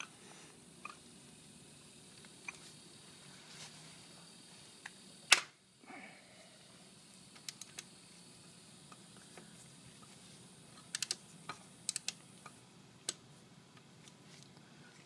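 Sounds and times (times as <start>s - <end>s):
wrench clicking on drain plug: 10.9s - 11.2s, 11.9s - 12.2s.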